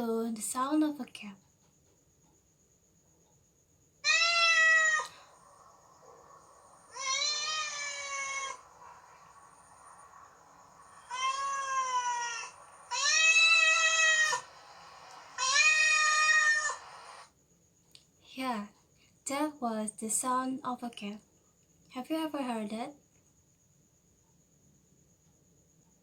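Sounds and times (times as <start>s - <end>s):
cat meowing: 4.0s - 5.3s, 6.9s - 8.6s, 11.0s - 14.5s, 15.4s - 16.8s.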